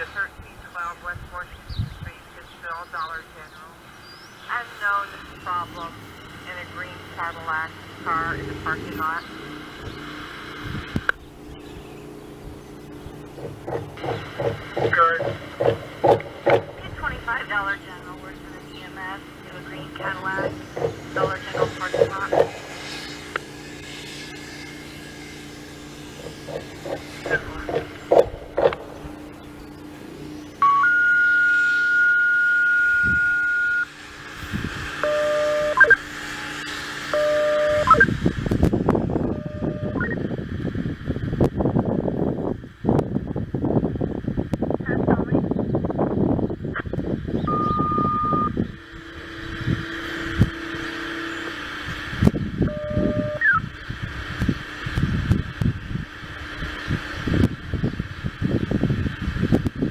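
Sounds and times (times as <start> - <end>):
two-tone radio page: 0.0 - 3.8, 4.4 - 9.3, 14.8 - 15.4, 16.8 - 22.6, 27.2 - 27.8, 39.3 - 40.2
rumble of noise: 0.0 - 59.9
steady low hum: 0.0 - 59.9
short knocks: 13.4 - 16.8
rising chirp: 18.0 - 34.3, 47.2 - 53.9
short beep bursts: 30.6 - 33.9, 35.0 - 36.0, 37.1 - 38.1, 39.3 - 40.2, 47.5 - 48.6, 52.7 - 53.6
two-tone paging tone: 30.6 - 33.9, 35.0 - 36.0, 37.1 - 38.1, 39.3 - 40.2, 47.4 - 49.9, 52.7 - 53.6.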